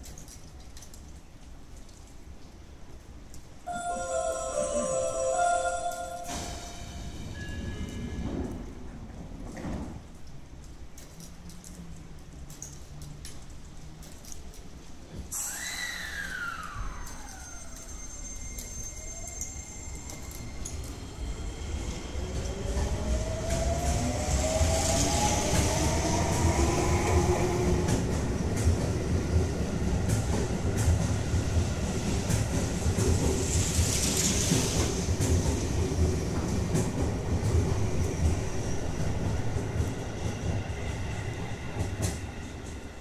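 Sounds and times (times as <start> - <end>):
electric train motors whining: 15.4 - 22.2.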